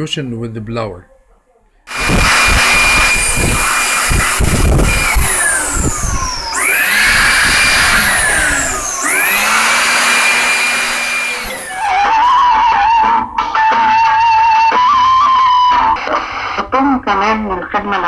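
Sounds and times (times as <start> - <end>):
electric air blower whining: 1.9 - 13.0.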